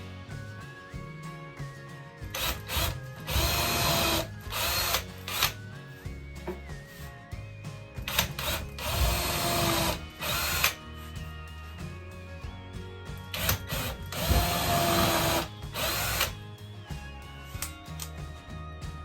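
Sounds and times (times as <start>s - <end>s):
background music: 0.0s - 19.0s
power drill driving screws: 2.4s - 5.6s, 8.1s - 10.8s, 13.4s - 16.4s.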